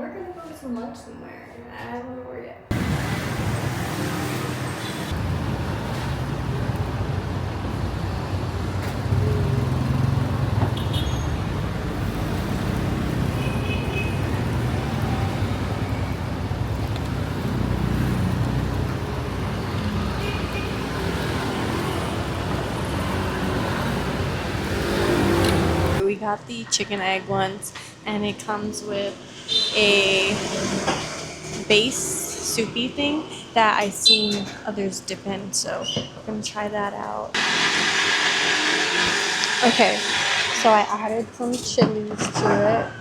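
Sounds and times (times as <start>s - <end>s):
road traffic rumble: 2.7s - 26.0s.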